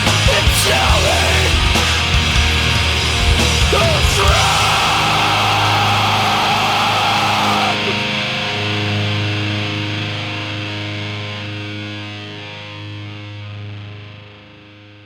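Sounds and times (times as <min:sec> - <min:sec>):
drums: 0:00.0 - 0:10.1
distorted electric guitar chord ringing: 0:00.5 - 0:11.2.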